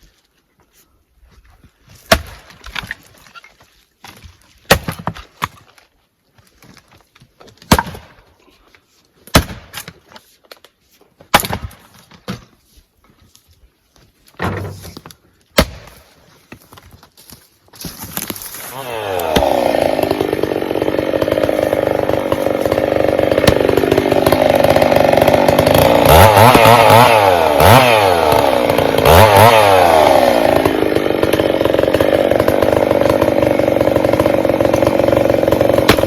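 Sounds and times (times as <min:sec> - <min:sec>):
wood splitting and falling: 0:01.9 - 0:08.3, 0:09.2 - 0:13.2, 0:14.0 - 0:36.0
axe chopping firewood: 0:02.0 - 0:03.2, 0:04.0 - 0:05.8, 0:07.4 - 0:08.3, 0:09.2 - 0:10.2, 0:11.2 - 0:12.6, 0:14.4 - 0:16.9, 0:17.8 - 0:36.0.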